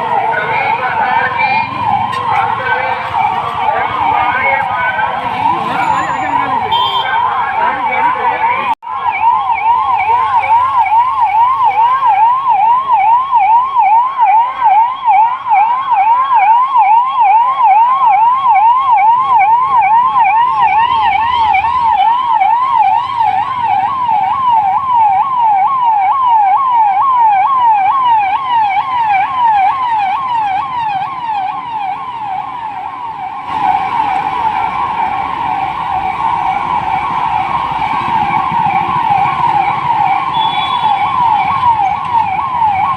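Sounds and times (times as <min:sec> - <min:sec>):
police sirens yelping: 0:00.0 - 0:42.9.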